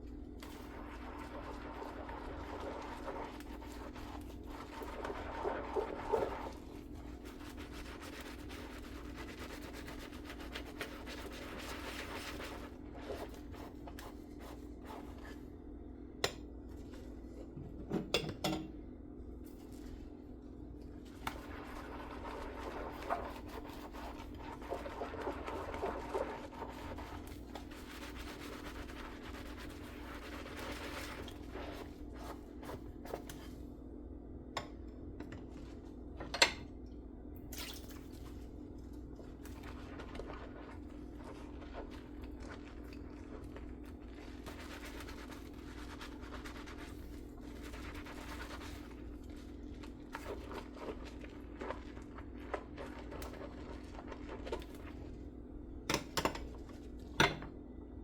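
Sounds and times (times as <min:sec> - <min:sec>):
dish scrubbing and scraping: 0:00.4 - 0:15.5, 0:21.0 - 0:33.6, 0:39.2 - 0:55.1
dishes clinking: 0:17.8 - 0:18.8.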